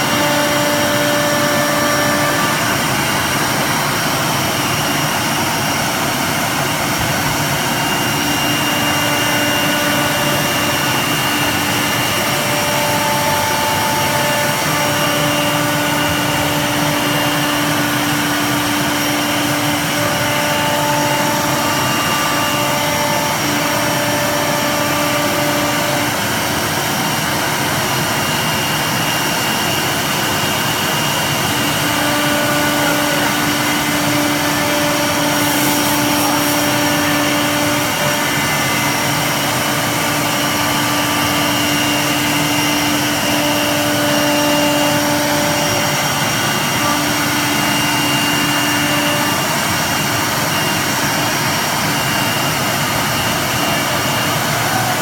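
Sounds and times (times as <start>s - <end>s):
whining tones: 0.0s - 55.0s
wood router running: 0.0s - 55.0s.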